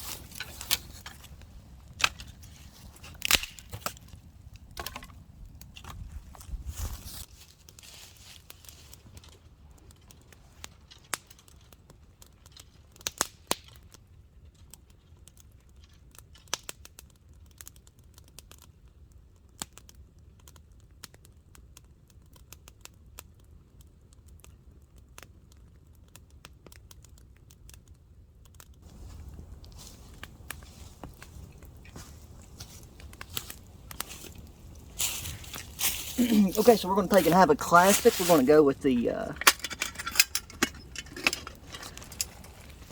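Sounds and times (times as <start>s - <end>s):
rustle: 0.0s - 17.5s, 28.8s - 42.9s
campfire crackling and snapping: 0.0s - 42.9s.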